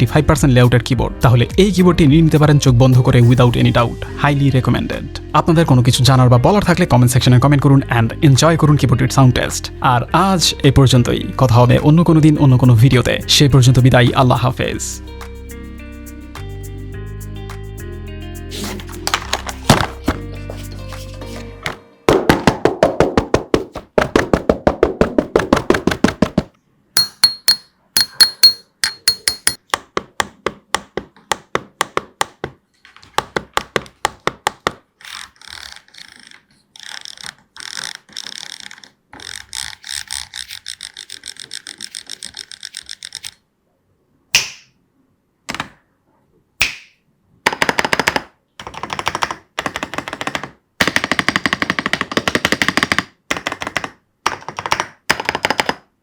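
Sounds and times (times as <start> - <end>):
mechanical keyboard typing: 35.0 - 43.4, 47.5 - 55.9.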